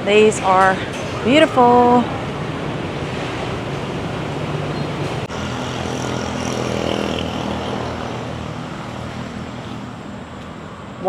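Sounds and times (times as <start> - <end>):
road hiss: 0.0 - 11.0
vehicle engine running: 2.3 - 11.0.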